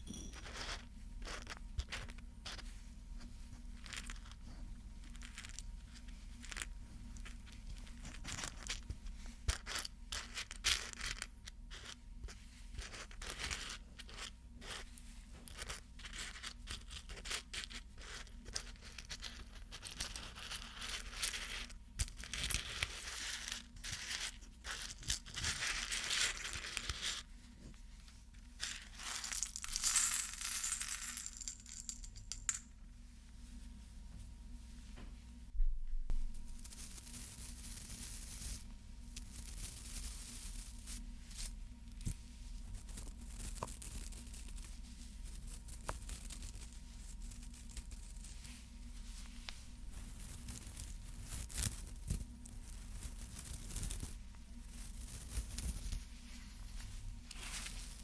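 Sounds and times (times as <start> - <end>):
scratching or rustling: 36.2 - 58.0.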